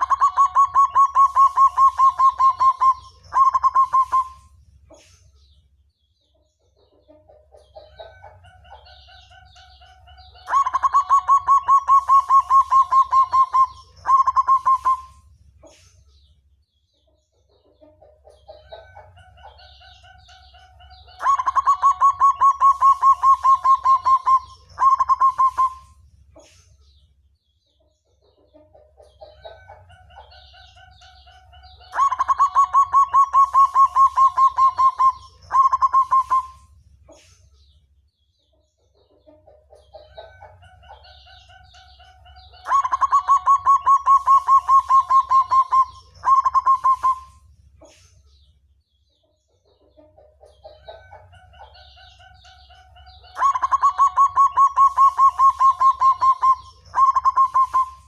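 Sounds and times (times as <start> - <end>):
dove cooing and trilling: 0.0 - 4.5, 10.4 - 15.2, 21.1 - 26.0, 31.8 - 36.7, 41.2 - 47.4, 53.1 - 58.0.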